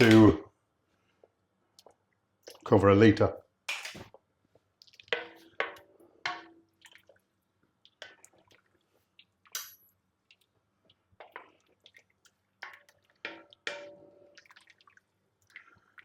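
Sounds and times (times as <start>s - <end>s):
kitchen utensils clicking and knocking: 0.0s - 0.4s.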